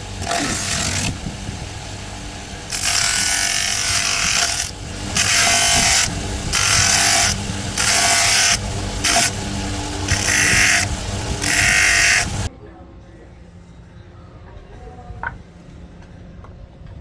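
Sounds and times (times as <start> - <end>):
woodworking tool rasping wood: 0.0 - 12.5
low machine hum: 0.0 - 17.0.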